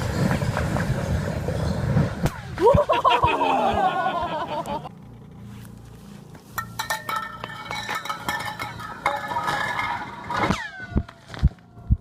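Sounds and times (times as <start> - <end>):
ice clinking down a borehole: 6.6 - 10.4.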